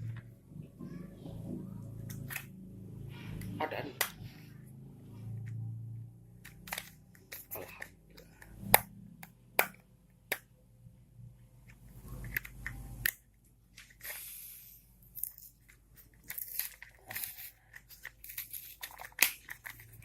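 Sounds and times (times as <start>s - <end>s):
plastic crinkling and tearing: 15.2s - 20.0s.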